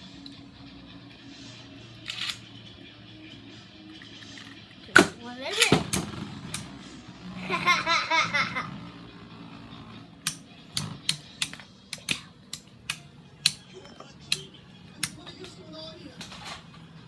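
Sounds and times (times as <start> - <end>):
child laughing: 7.4 - 8.8.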